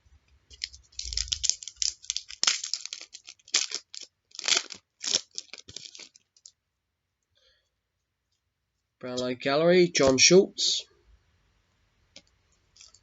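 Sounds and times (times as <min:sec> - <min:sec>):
foil pack tearing and crinkling: 0:00.6 - 0:06.2.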